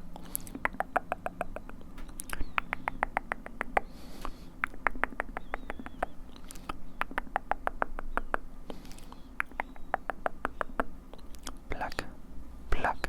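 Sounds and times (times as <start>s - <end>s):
wet tongue clicks and lip smacks: 0.2s - 12.1s
breathy hiss: 3.8s - 4.6s.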